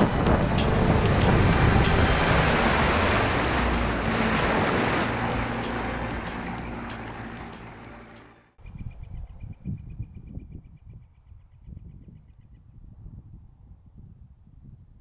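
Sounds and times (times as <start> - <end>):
wind on microphone: 0.0 - 6.8, 8.6 - 15.0
low knocks: 0.0 - 8.2
water rushing past hull: 0.0 - 8.4
boat motor running: 0.0 - 8.5.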